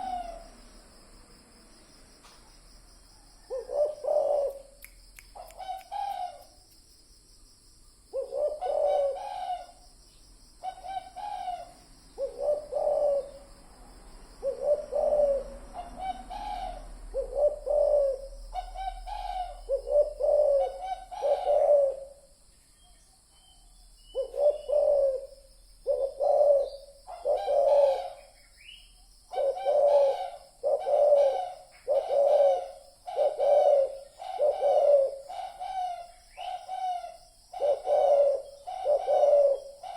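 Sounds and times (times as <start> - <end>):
dove cooing: 0.0 - 0.6, 3.4 - 4.8, 5.6 - 6.4, 8.1 - 9.8, 10.6 - 13.6, 14.4 - 22.3, 24.1 - 28.4, 29.3 - 39.9.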